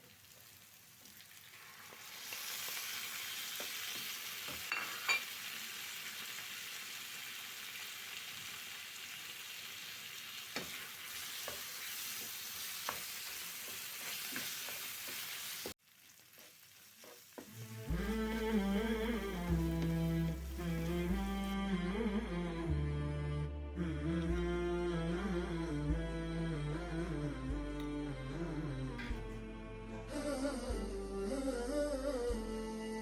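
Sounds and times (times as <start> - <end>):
food sizzling in a pan: 0.0 - 21.6.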